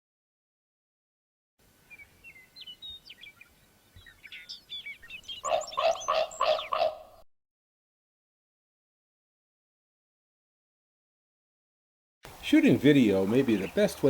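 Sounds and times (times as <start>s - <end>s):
birds chirping: 1.6s - 7.2s, 12.3s - 14.0s
lower-pitched bird calls: 1.8s - 7.2s, 13.0s - 14.0s.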